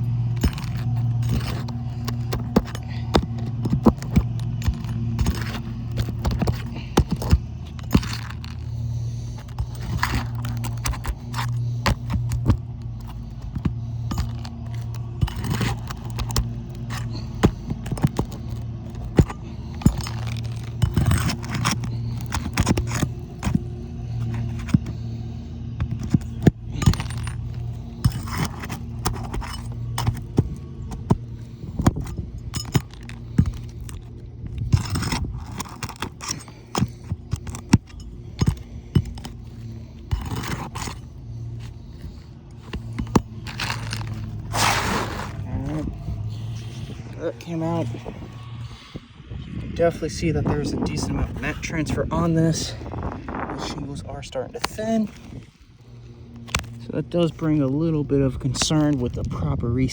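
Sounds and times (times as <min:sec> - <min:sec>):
sharp metal clicks: 0:00.0 - 0:44.5
nails scraping out of shingles: 0:00.0 - 0:47.1
steady low hum: 0:00.0 - 0:59.9.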